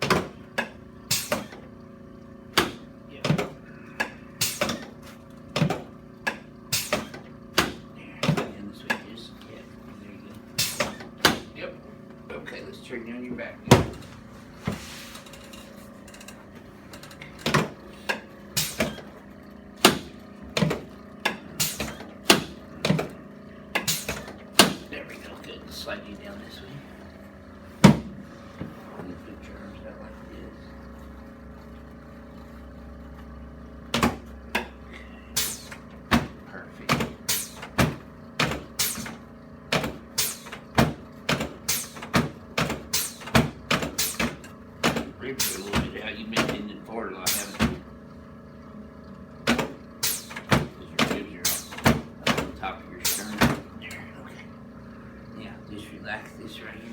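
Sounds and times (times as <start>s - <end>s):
treatment table clacks and knocks: 13.7s - 19.1s.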